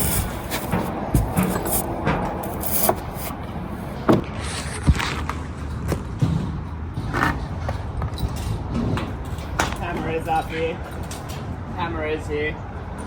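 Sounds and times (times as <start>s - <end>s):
steady low rumble: 0.0s - 4.1s.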